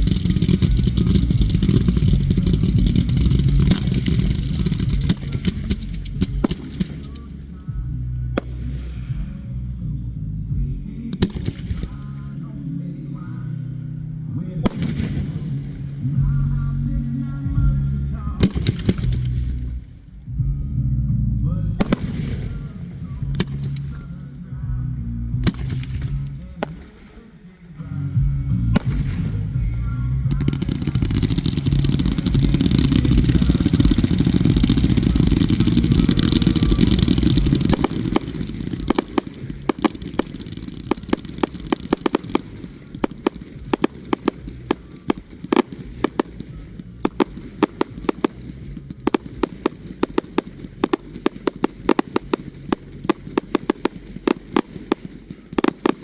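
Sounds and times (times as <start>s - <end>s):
fireworks crackling pops: 0.0s - 7.8s, 8.4s - 9.3s, 11.1s - 12.2s, 14.6s - 16.2s, 18.4s - 19.9s, 21.8s - 24.1s, 25.3s - 27.6s, 28.8s - 56.0s
fireworks rumbling bursts: 0.0s - 9.6s, 11.1s - 12.4s, 14.6s - 17.7s, 18.4s - 20.4s, 21.8s - 24.4s, 25.2s - 56.0s.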